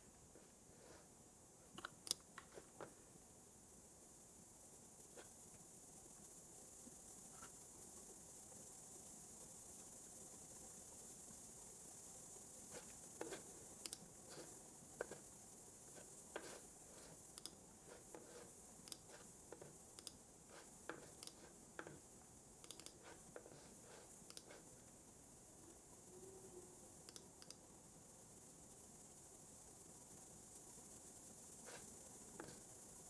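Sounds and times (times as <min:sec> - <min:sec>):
steady faint hiss: 0:00.0 - 0:33.0
keyboard and mouse clicks: 0:01.8 - 0:02.5, 0:21.0 - 0:22.0, 0:22.6 - 0:23.0, 0:24.3 - 0:24.6, 0:27.0 - 0:27.6.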